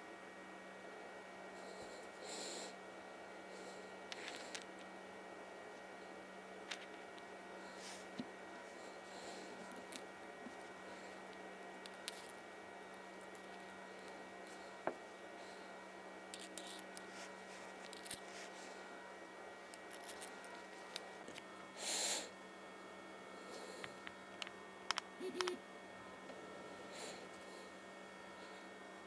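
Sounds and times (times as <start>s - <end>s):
faint steady hum: 0.0s - 29.0s
small metal parts clicking: 19.7s - 20.3s.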